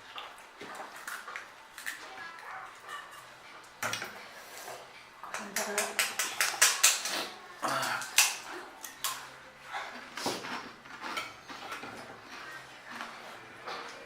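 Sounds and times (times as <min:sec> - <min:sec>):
crunchy shells being chewed: 0:06.2 - 0:14.0.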